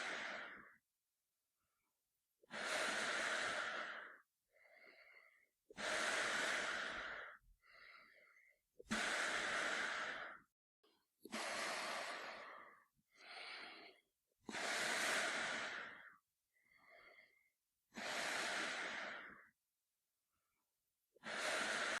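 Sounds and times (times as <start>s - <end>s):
man breathing through gas mask: 0.0s - 0.8s, 2.5s - 10.5s, 11.3s - 19.5s, 21.2s - 22.0s.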